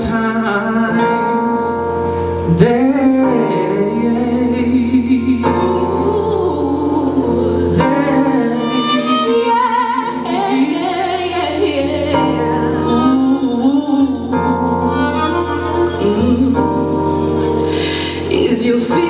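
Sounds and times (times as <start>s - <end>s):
live jazz ballad: 0.0s - 19.0s.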